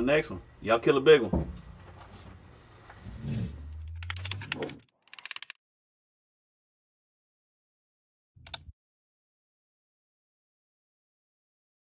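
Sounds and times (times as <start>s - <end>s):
low hum: 2.4s - 4.8s
sharp clicks: 3.8s - 5.6s, 8.4s - 8.7s.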